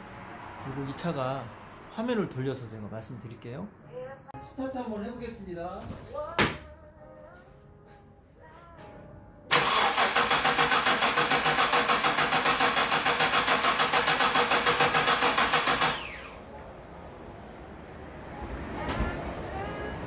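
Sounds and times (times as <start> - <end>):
starter motor cranking engine: 9.5 - 16.4.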